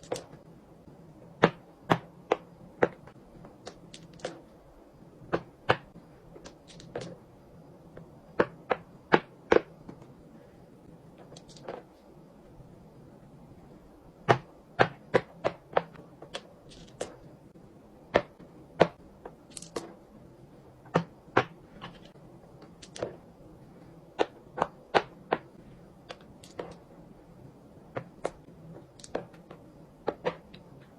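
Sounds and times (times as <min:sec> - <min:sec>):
fidget toys clicking and popping: 0:29.0 - 0:29.2.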